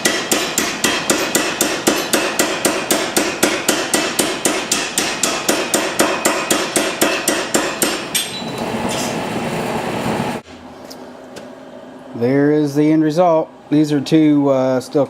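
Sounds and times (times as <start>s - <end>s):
power hammer striking steel: 0.0s - 9.2s.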